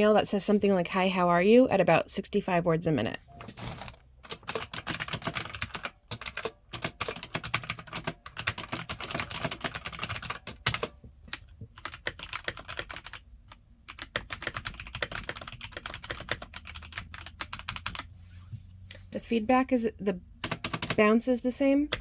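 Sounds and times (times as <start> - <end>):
clicky mechanical keyboard typing: 4.2 - 13.2, 13.9 - 18.1, 20.4 - 21.1
quieter keyboard typing: 4.2 - 18.1, 20.4 - 22.0.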